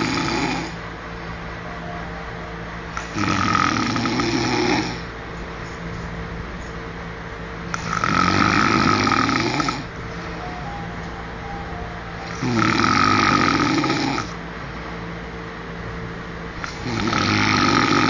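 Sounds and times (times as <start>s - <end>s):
man snoring: 0.0s - 0.8s, 3.0s - 5.1s, 7.7s - 9.9s, 12.2s - 14.4s, 16.6s - 18.0s.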